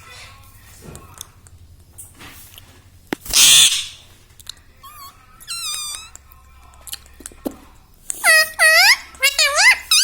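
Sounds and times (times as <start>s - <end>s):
parrot squawking and whistling: 3.3s - 4.1s, 4.8s - 6.2s, 8.2s - 10.0s.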